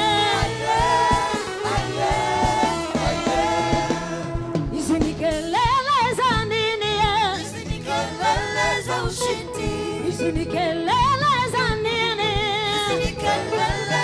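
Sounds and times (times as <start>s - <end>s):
steady drum hits: 0.0s - 5.9s
bass: 0.0s - 14.0s
vibrato melodic notes: 0.0s - 14.0s
worship band playing: 0.0s - 14.0s.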